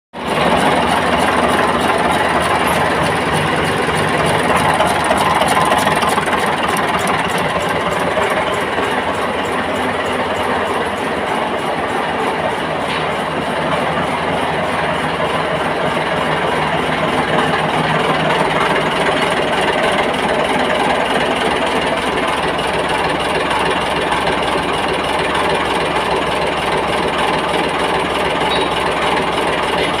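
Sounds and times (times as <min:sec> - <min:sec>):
diesel engine running: 0:00.2 - 0:30.0.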